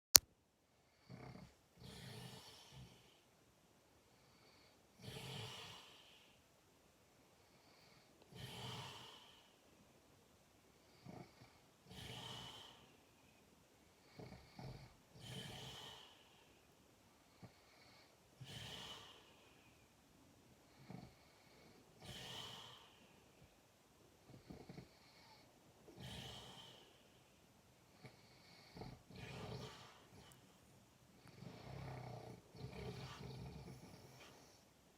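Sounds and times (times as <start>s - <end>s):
short low snort: 31.5s - 34.5s.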